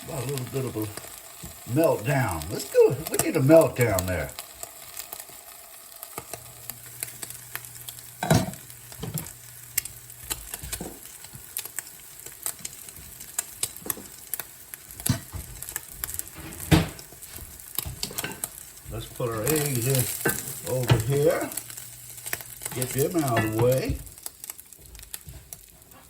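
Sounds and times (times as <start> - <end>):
eggs sizzling in a frying pan: 0.0 - 26.0
spatula scraping and tapping pan: 15.0 - 26.0.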